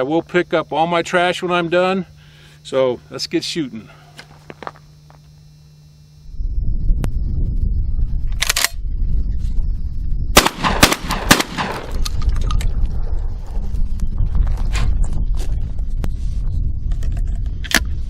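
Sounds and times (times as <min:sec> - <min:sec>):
low rumble: 0:06.3 - 0:18.0
shotgun shots: 0:10.4 - 0:12.2.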